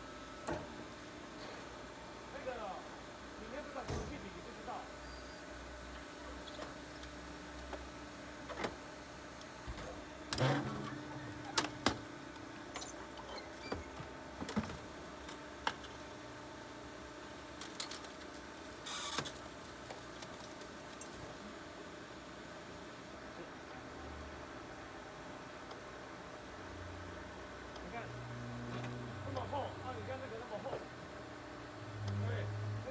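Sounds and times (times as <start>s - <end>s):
hydraulic baler humming: 9.7s - 14.0s.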